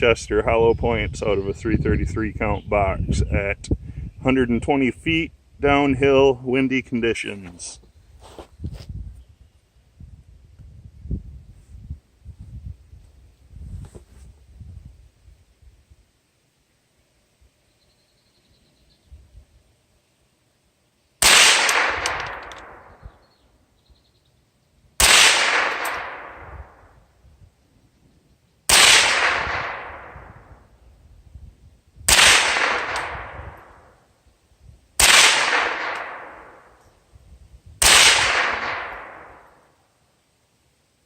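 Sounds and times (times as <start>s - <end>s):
rifle shots: 21.2s - 23.0s, 25.0s - 27.0s, 28.7s - 30.6s, 32.1s - 34.0s, 35.0s - 36.8s, 37.8s - 39.7s.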